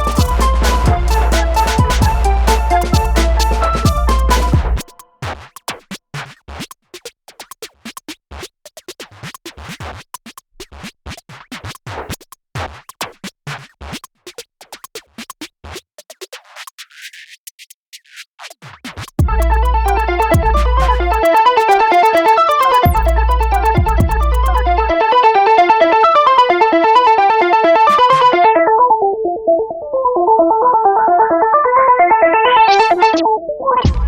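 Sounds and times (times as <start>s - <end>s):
electronic music with stuttering stabs: 0.0s - 10.0s, 18.0s - 28.5s, 33.8s - 34.0s
scratch-like sounds: 0.0s - 24.9s.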